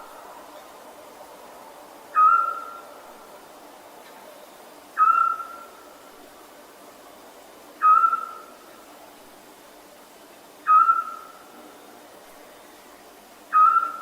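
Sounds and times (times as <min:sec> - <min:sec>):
faint background hiss: 0:00.0 - 0:14.0
owl calling: 0:02.1 - 0:02.9, 0:05.0 - 0:05.8, 0:07.8 - 0:08.6, 0:10.6 - 0:11.4, 0:13.5 - 0:14.0.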